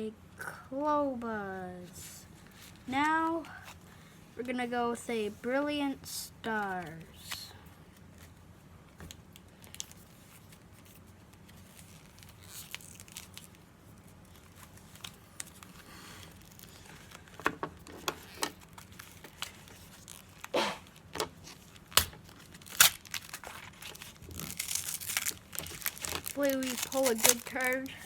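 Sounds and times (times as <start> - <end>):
foil pack crinkling: 9.3 - 28.0
sharp crackles: 18.7 - 28.0.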